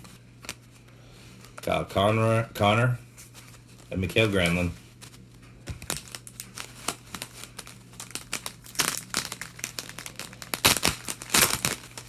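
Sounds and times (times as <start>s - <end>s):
wrapper crinkling and tearing: 5.8s - 12.0s.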